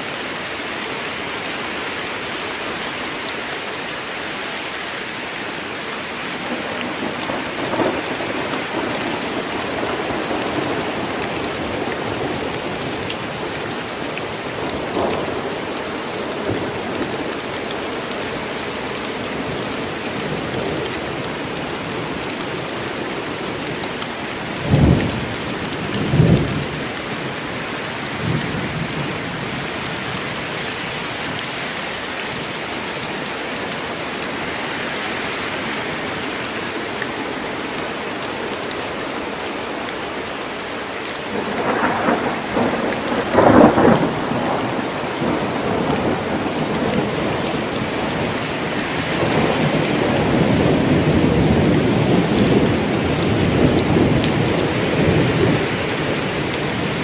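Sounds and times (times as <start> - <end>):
heavy rain in forest: 0.0 - 57.0
thunder cracks: 41.3 - 47.4
rolling thunder rumble: 41.3 - 48.4.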